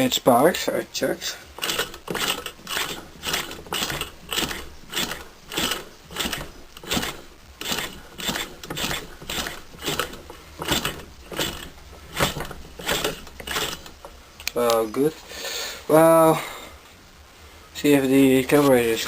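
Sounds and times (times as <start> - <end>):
moped engine cranking clicking: 1.6 - 14.6.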